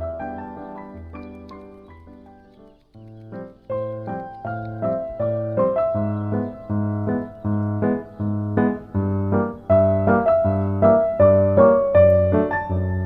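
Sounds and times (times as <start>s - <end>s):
piano melody: 0.0s - 13.0s.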